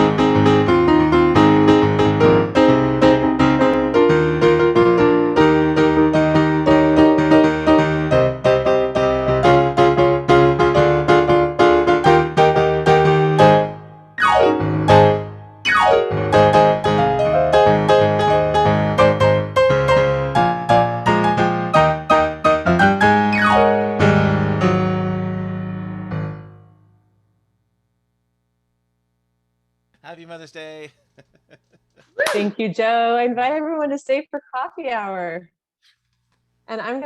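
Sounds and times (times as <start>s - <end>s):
piano music: 0.0s - 27.0s.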